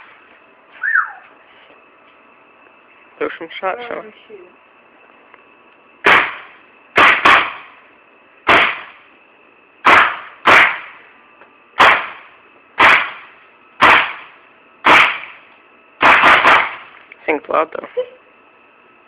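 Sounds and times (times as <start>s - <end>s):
paintball marker shots: 6.0s - 7.7s, 8.5s - 9.0s, 9.8s - 11.0s, 11.8s - 15.4s, 16.0s - 17.0s.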